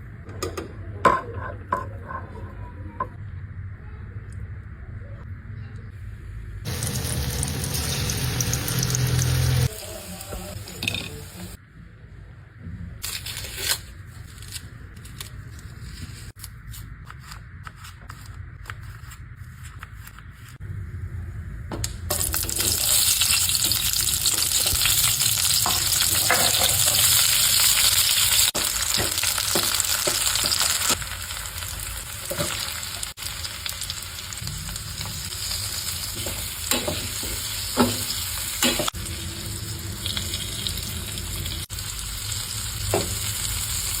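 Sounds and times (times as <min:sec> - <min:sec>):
food sizzling in hot oil: 0:06.7 - 0:11.6, 0:22.1 - 0:44.0.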